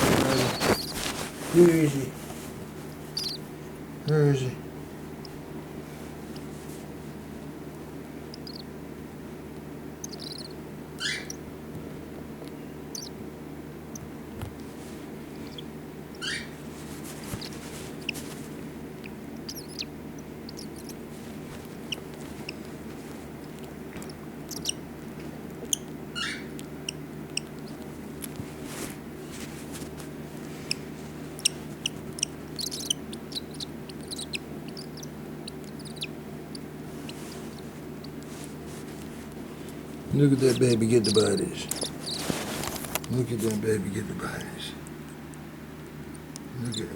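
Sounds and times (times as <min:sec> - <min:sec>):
baby bird begging calls: 0:00.0 - 0:02.2, 0:03.1 - 0:05.3, 0:08.3 - 0:08.8, 0:10.0 - 0:11.5, 0:12.9 - 0:13.2, 0:15.4 - 0:16.6, 0:19.4 - 0:21.1, 0:24.0 - 0:24.8, 0:25.7 - 0:27.8, 0:30.6 - 0:38.2, 0:40.2 - 0:42.5
steady low hum: 0:00.0 - 0:46.9.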